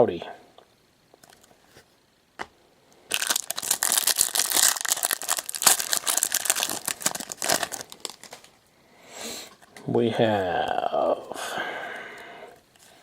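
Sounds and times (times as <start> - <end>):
plastic wrapper tearing and crinkling: 3.1 - 8.6.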